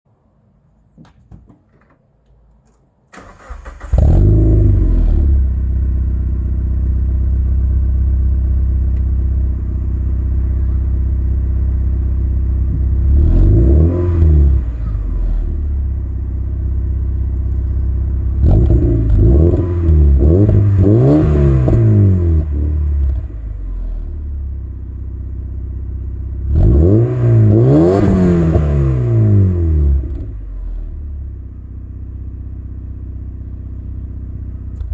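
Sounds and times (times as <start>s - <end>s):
car engine starting: 3.1s - 34.9s
engine revving: 3.2s - 5.8s, 12.6s - 15.8s, 17.5s - 24.2s, 26.4s - 31.0s.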